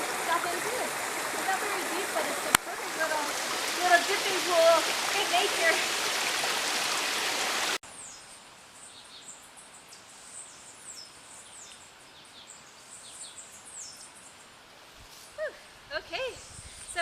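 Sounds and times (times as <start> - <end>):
water cascading into pool: 0.0 - 7.8
birds chirping: 0.0 - 8.2.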